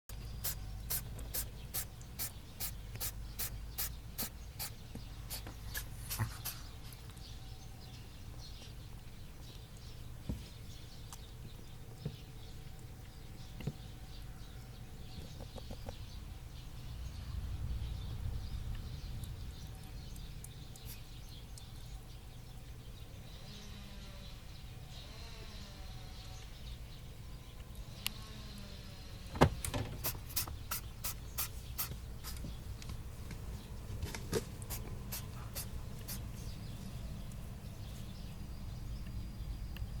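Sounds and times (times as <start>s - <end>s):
rabbit sneezing: 0.4s - 6.8s.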